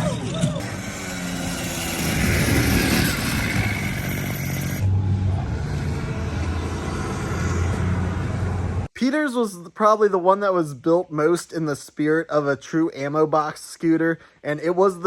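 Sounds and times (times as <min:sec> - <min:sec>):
scooter engine running: 0:00.0 - 0:04.9.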